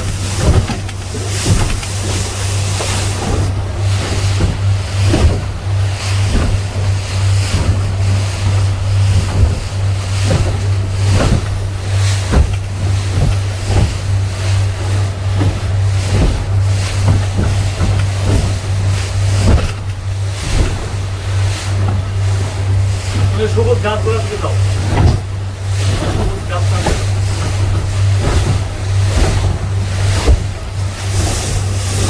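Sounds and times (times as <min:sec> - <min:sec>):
hull thudding on waves: 0:00.0 - 0:32.0
speedboat engine running: 0:00.0 - 0:32.0
wind and spray on microphone: 0:00.0 - 0:32.0.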